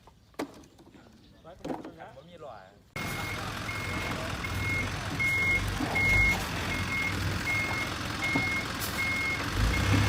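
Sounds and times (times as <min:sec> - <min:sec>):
low engine rumble: 0:02.9 - 0:10.0
reversing alarm beeping: 0:03.0 - 0:10.0.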